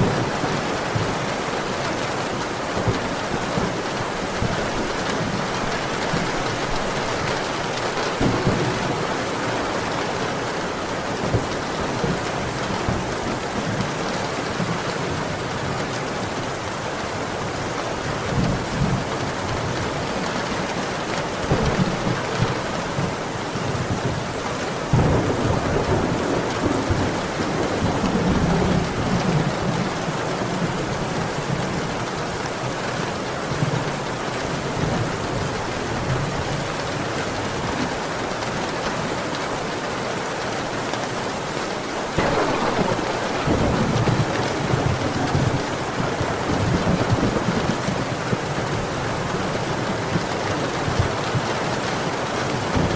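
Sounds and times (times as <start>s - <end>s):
heavy rain falling: 0.0s - 52.9s
thunder rumbling: 2.3s - 13.1s, 24.9s - 29.9s, 42.0s - 51.5s.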